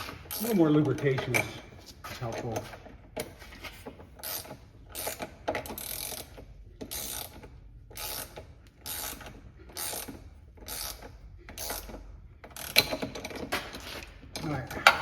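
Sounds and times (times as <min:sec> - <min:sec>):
ratchet wrench clicking: 0:04.2 - 0:13.5.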